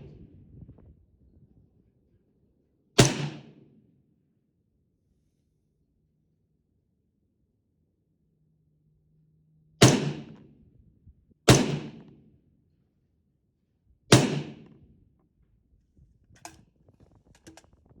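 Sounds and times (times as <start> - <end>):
rifle shots: 3.0 - 3.6, 9.8 - 10.4, 11.5 - 12.1, 14.1 - 14.7
faint clicks and knocks: 16.3 - 18.0.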